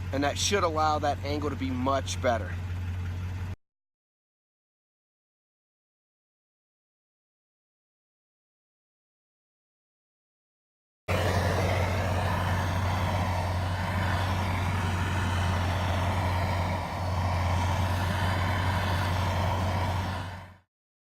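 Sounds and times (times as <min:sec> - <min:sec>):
truck engine running: 0:00.0 - 0:03.6, 0:11.1 - 0:20.6.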